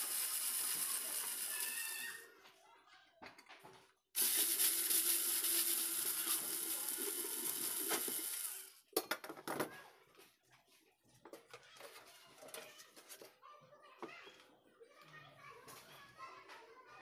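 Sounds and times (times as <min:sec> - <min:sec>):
small motor hissing and humming: 0:00.0 - 0:02.3, 0:04.2 - 0:08.8.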